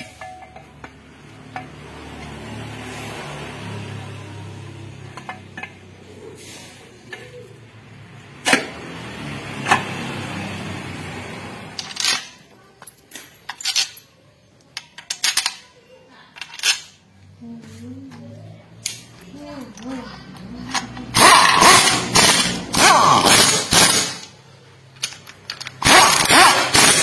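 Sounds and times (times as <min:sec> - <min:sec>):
metal tools clinking and knocking: 0:00.0 - 0:02.2, 0:11.8 - 0:17.0, 0:24.8 - 0:27.0.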